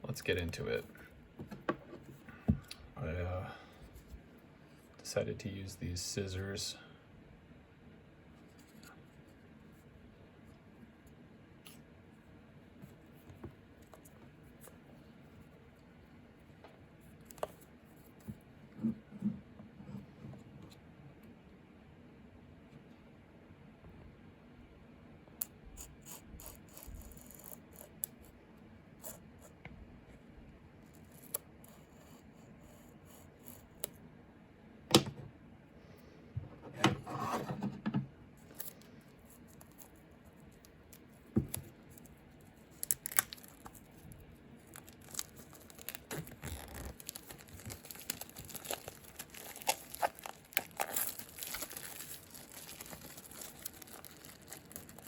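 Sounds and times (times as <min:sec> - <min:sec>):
packaging rustling and tearing: 0:39.4 - 0:55.0.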